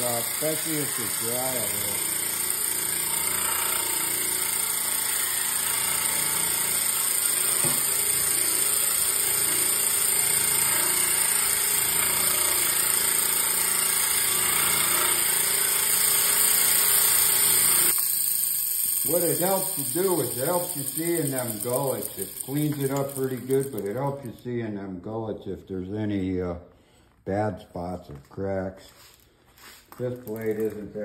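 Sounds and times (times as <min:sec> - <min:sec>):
blade scrubbing hiss: 0:00.0 - 0:02.4, 0:17.9 - 0:24.4
machine motor running: 0:00.0 - 0:24.4.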